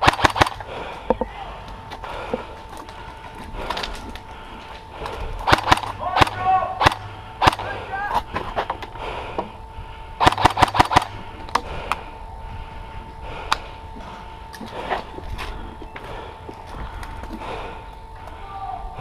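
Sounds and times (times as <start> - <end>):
airsoft guns firing: 0.0 - 0.8, 5.4 - 7.8, 10.2 - 11.2.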